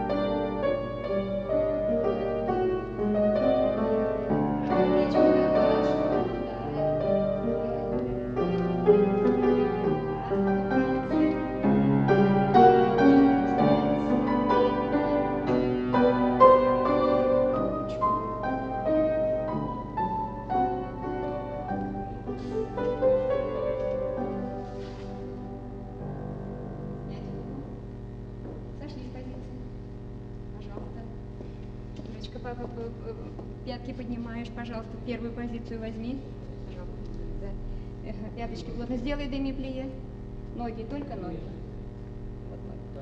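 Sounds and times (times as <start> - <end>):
solo classical piano: 0.0 - 27.8.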